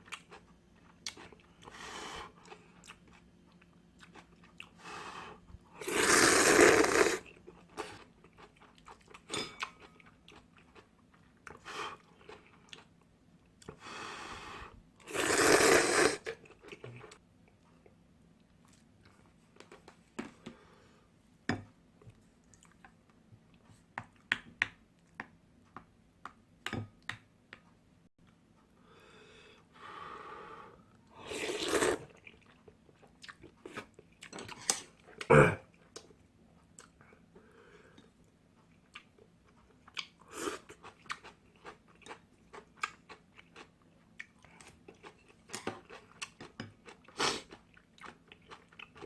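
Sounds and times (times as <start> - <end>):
slurping noodles: 5.8 - 7.3, 15.0 - 16.3, 31.2 - 32.2
chewing with mouth smacks: 38.6 - 49.0.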